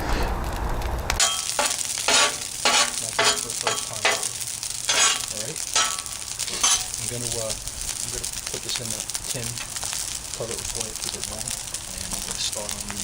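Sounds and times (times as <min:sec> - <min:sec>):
low sizzle: 0:00.0 - 0:13.0
metal spatula scraping griddle: 0:01.2 - 0:07.0.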